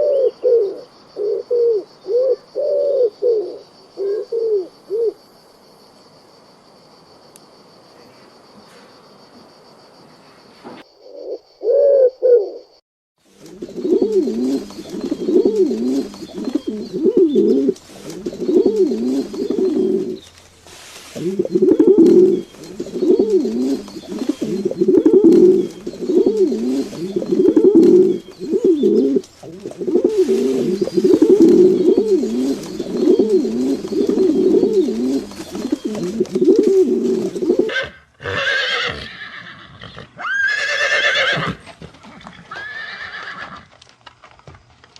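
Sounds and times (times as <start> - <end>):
pigeons cooing: 0.0 - 5.2, 11.0 - 12.7, 13.3 - 43.5
horse whinnying: 37.7 - 43.7.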